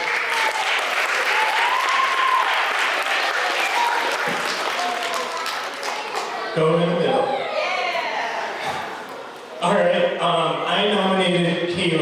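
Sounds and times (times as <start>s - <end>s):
children applauding: 0.0s - 6.6s.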